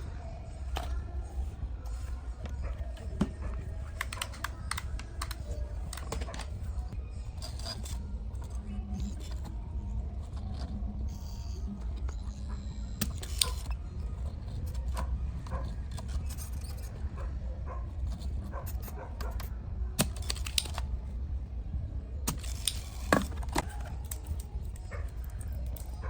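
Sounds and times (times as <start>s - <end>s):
steady low hum: 0.0s - 26.0s
metal parts and tools clinking: 0.6s - 9.6s, 18.0s - 20.9s, 22.3s - 26.0s.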